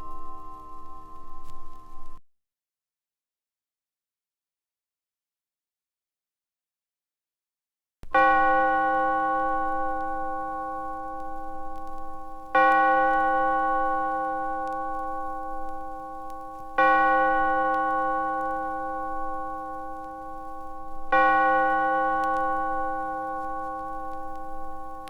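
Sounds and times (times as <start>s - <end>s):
bell tolling: 0.0s - 2.2s.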